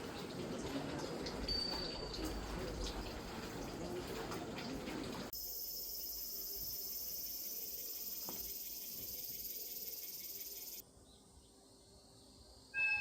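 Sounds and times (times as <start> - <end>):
insects trilling: 5.4 - 10.8.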